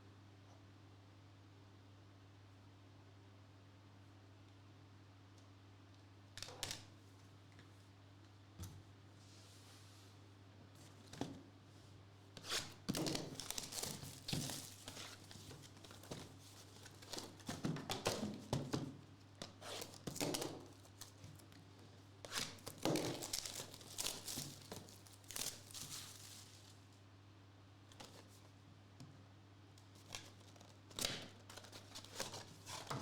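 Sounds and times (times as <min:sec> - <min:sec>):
card pack wrappers tearing: 0:12.4 - 0:16.1, 0:22.3 - 0:26.8.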